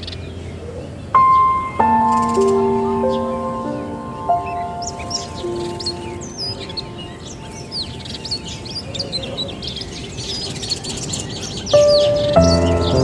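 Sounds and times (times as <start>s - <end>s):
background music: 0.0s - 8.6s, 11.8s - 13.0s
birds chirping: 0.0s - 13.0s.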